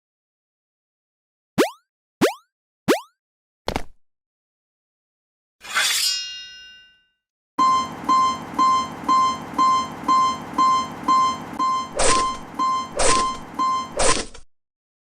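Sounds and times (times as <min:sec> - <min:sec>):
level crossing warning bell: 0:07.6 - 0:14.0.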